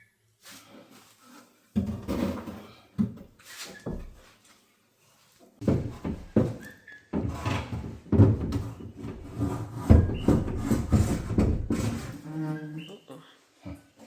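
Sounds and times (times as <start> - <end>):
wooden knocks and scraping: 1.8 - 4.2, 5.6 - 12.2.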